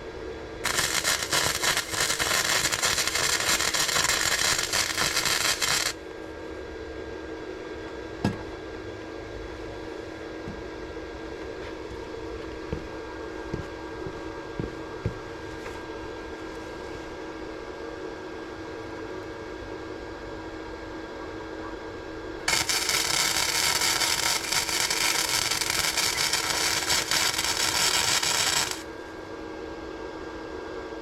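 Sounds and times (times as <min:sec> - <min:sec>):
steady hum: 0:00.0 - 0:07.6, 0:22.3 - 0:29.4
arc welding crackle: 0:00.6 - 0:06.0, 0:22.5 - 0:28.9.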